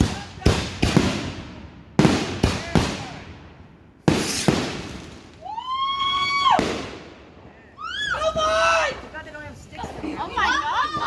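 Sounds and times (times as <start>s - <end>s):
fireworks bangs: 0.0s - 11.0s
firework whistling tone: 4.2s - 4.6s.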